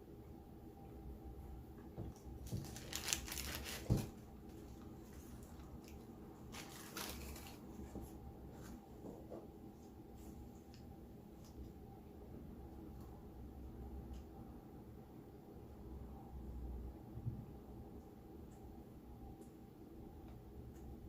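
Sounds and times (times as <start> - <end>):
paper wrapper rustling: 2.4 - 8.0.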